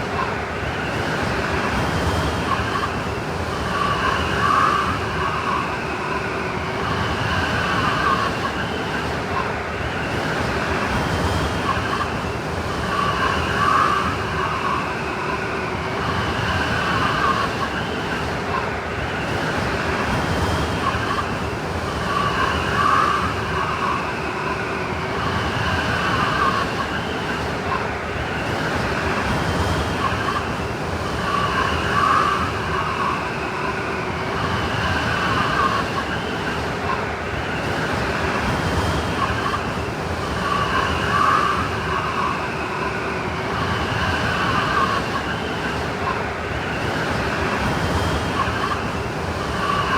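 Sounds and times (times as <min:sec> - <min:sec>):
howling blizzard wind: 0:00.0 - 0:49.9.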